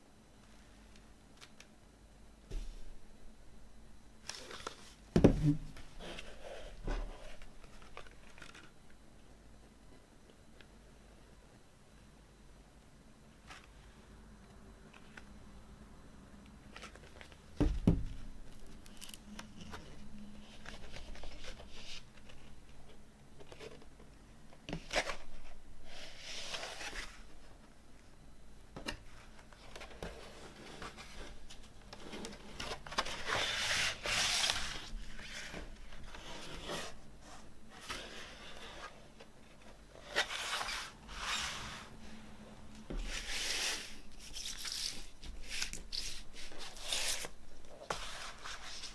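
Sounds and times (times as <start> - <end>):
rustling and sliding of record sleeves: 18.7 - 22.8, 24.7 - 27.6, 29.0 - 42.2, 42.8 - 48.9.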